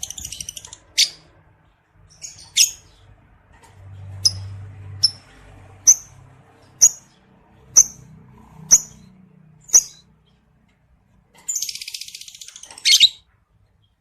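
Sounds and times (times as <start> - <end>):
lovebird chirping: 0.0 - 1.3, 2.0 - 3.1, 6.8 - 9.1, 9.7 - 10.4, 11.4 - 14.0.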